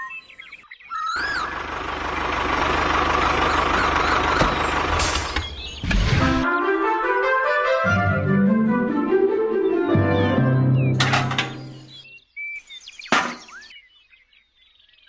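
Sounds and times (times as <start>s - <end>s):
bird chirps: 0.0s - 1.6s, 3.2s - 6.0s, 10.2s - 15.0s
vehicle engine running loud: 1.2s - 5.9s.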